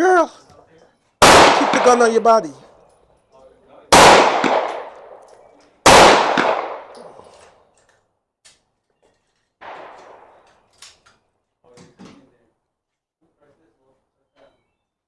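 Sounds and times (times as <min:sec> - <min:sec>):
rifle shot with echo: 0:01.2 - 0:02.3, 0:03.9 - 0:07.3, 0:09.6 - 0:10.4
faint gunshot: 0:04.0 - 0:04.9, 0:05.9 - 0:06.9.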